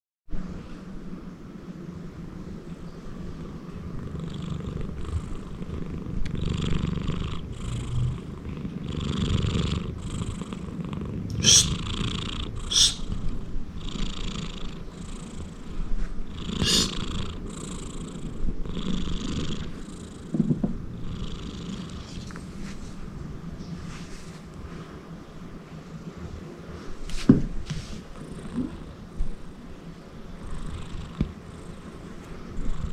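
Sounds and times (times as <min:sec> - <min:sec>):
cat snoring: 0:03.8 - 0:20.4, 0:21.0 - 0:22.3, 0:28.1 - 0:29.0, 0:30.4 - 0:32.9.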